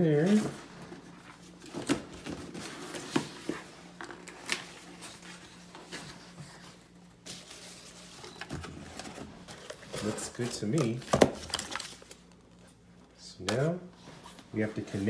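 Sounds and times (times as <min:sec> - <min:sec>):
packaging clicks and rustles: 0:01.4 - 0:12.7.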